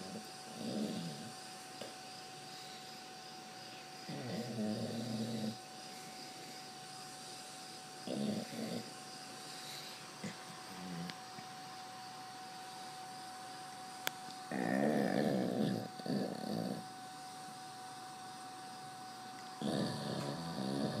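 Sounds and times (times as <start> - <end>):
dog snoring: 0.0 - 1.5, 4.0 - 11.4, 14.5 - 17.0, 19.6 - 21.0.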